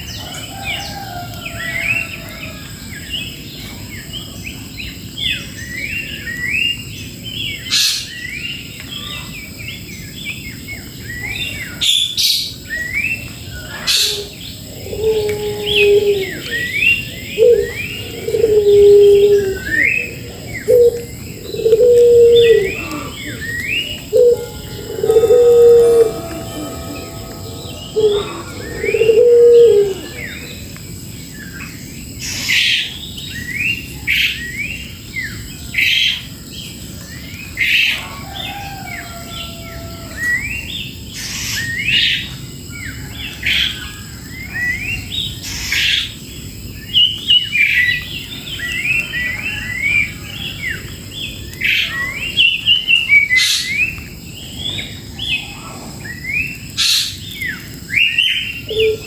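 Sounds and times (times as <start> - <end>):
birds chirping: 0.0 - 33.9.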